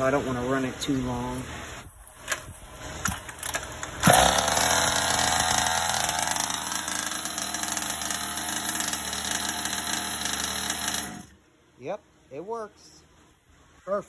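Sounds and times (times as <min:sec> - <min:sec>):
small two-stroke engine idling: 0:03.5 - 0:11.4.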